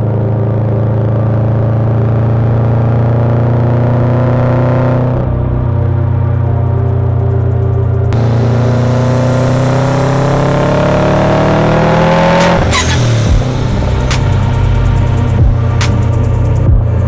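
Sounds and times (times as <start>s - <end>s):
car engine accelerating: 0.0s - 17.0s
exhaust cracks: 8.2s - 17.0s.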